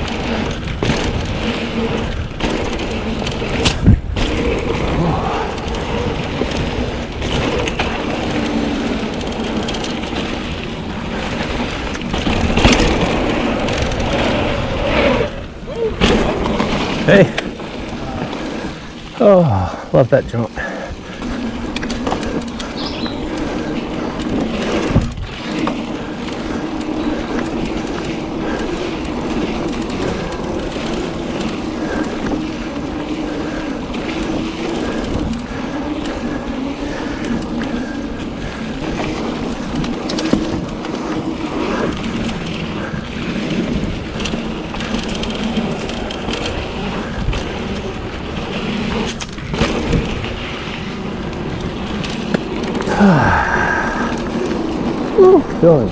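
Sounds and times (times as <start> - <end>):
bike tyres rolling on dirt: 0.0 - 55.9
bike thump: 12.0 - 14.3, 15.9 - 18.6.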